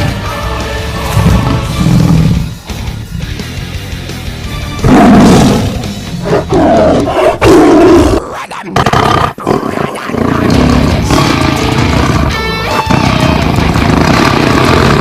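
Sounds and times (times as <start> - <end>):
tiger roaring: 4.8 - 15.0.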